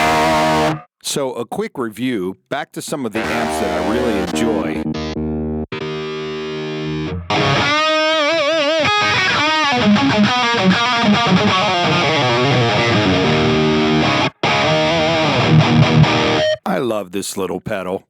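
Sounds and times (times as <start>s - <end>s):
electric guitar playing: 0.0s - 0.9s, 3.2s - 16.6s.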